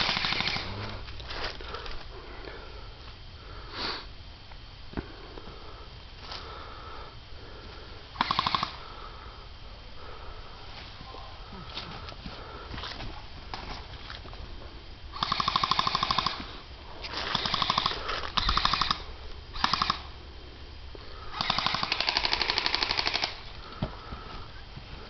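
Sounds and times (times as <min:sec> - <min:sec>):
airsoft guns firing bursts: 0:00.0 - 0:00.9, 0:08.2 - 0:08.8, 0:15.2 - 0:16.5, 0:17.2 - 0:20.1, 0:21.3 - 0:23.4.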